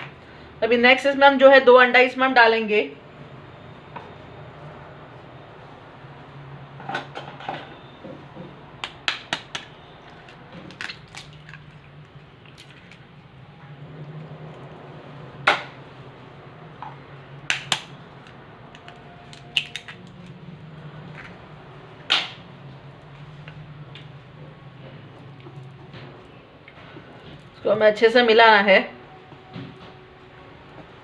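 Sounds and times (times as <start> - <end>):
eggs cracking against a bowl: 8.8 - 13.1, 17.5 - 20.3.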